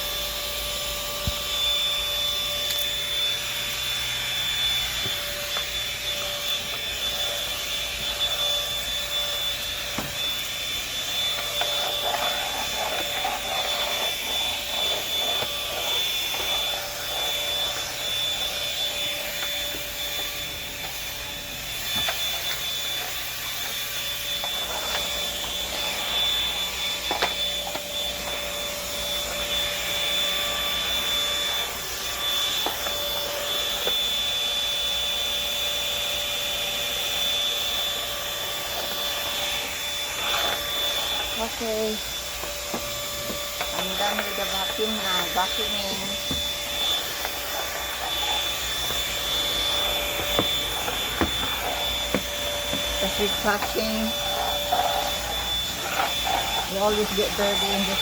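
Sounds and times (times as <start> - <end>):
vacuum cleaner running: 0.0 - 58.0
vacuum cleaner knocks: 9.9 - 10.3, 46.2 - 46.5, 50.1 - 53.6.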